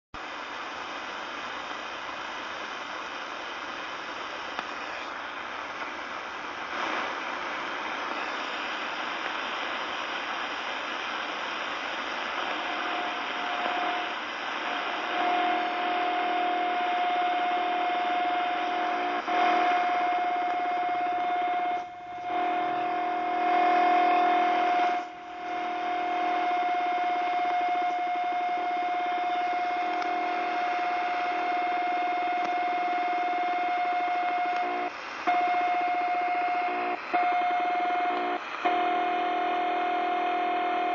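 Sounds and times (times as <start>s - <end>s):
radio static hiss: 0.2s - 40.9s
low buzzing: 11.4s - 40.9s
whistle-like radio tone: 11.6s - 40.9s.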